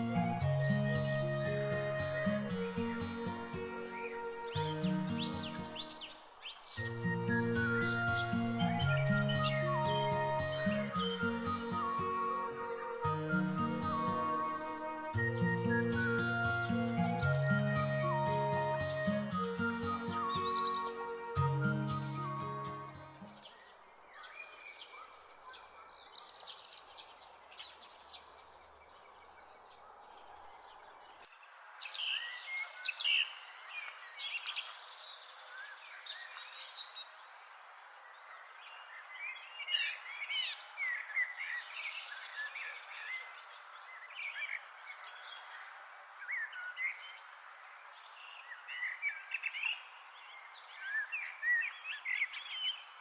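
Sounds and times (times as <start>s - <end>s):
birds chirping and singing: 0.0s - 23.4s.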